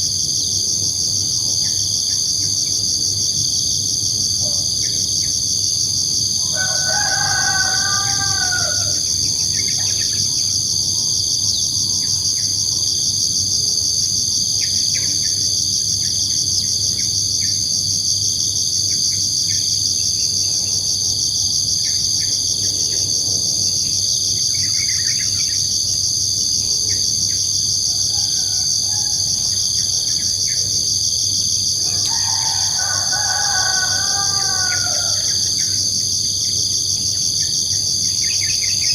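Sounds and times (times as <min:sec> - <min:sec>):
crickets chirping: 0:00.0 - 0:38.9
rooster crowing: 0:06.4 - 0:10.4, 0:27.7 - 0:30.2, 0:31.7 - 0:36.2.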